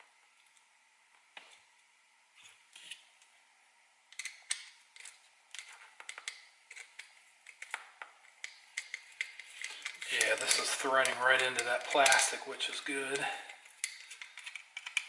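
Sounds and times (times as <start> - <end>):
screw hardware clicking: 4.1 - 7.8, 13.1 - 15.0.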